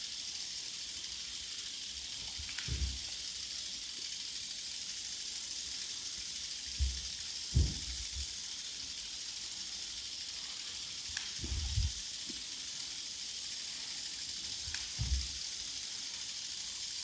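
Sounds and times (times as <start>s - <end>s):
fine crackling hiss: 0.0s - 17.0s
dull low thumps: 11.4s - 11.9s.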